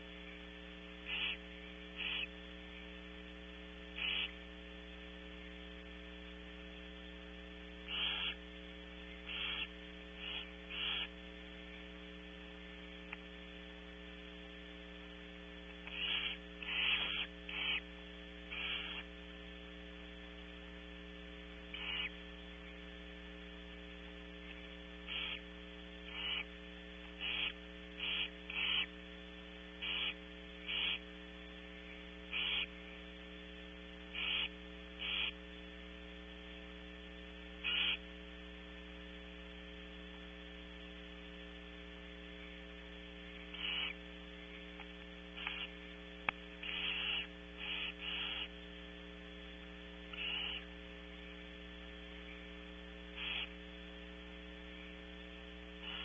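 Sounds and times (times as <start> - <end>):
electrical hum: 0.0 - 56.0
owls hissing calls: 1.1 - 1.4, 2.0 - 2.3, 4.0 - 4.4, 7.9 - 8.4, 9.3 - 11.1, 15.8 - 17.9, 18.5 - 19.1, 21.7 - 22.2, 25.1 - 25.4, 26.1 - 26.5, 27.2 - 28.9, 29.8 - 31.0, 32.3 - 32.7, 34.1 - 35.4, 37.6 - 38.0, 43.5 - 44.0, 45.4 - 45.8, 46.6 - 48.5, 50.1 - 50.7, 53.2 - 53.6.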